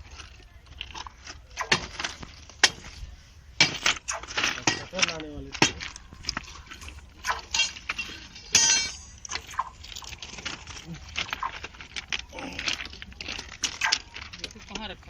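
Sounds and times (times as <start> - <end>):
hand tools striking steel: 3.6 - 5.9, 7.2 - 9.8.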